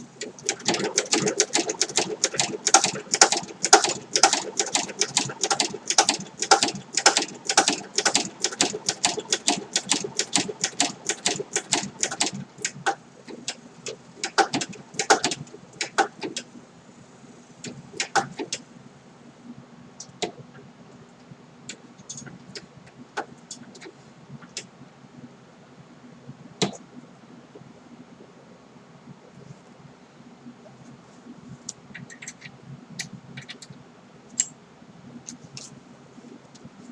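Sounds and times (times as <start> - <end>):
sewing machine stitching leather: 0.2 - 13.5, 14.2 - 16.4.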